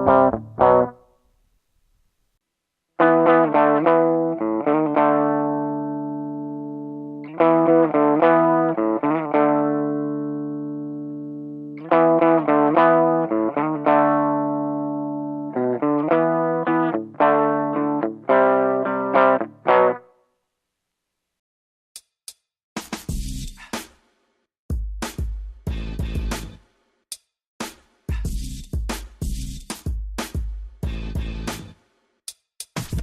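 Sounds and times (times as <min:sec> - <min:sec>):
electric guitar notes and chords: 0:00.0 - 0:01.0, 0:03.0 - 0:20.1.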